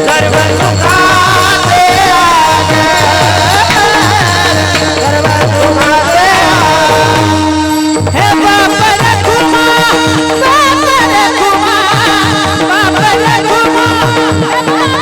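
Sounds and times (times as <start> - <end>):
drum strokes: 0.0 - 15.0
person singing devotional melody: 0.0 - 15.0
steady held drone tone: 0.1 - 11.5.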